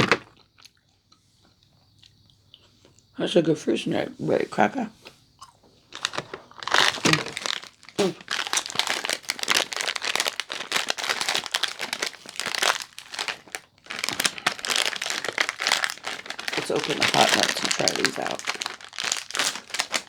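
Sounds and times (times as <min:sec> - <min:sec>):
plastic packaging crinkling: 0:05.9 - 0:20.0.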